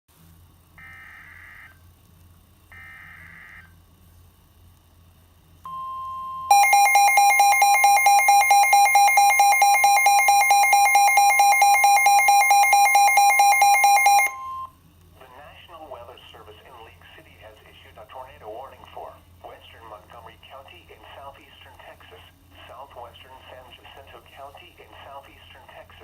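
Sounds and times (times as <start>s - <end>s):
loud two-tone attention signal: 5.7s - 14.7s
single steady tone: 5.7s - 14.7s
electronic data bursts: 5.8s - 14.7s.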